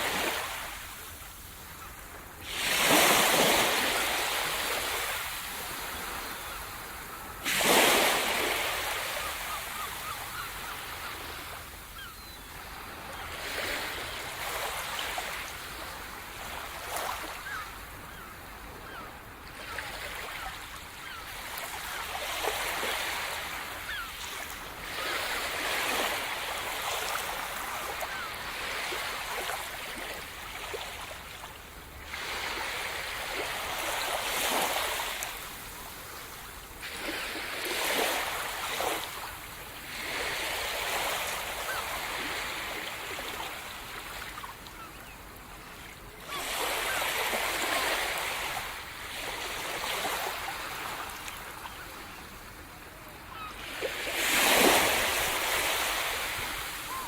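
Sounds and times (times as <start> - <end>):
sea surf breaking on shore: 2.4 - 10.2.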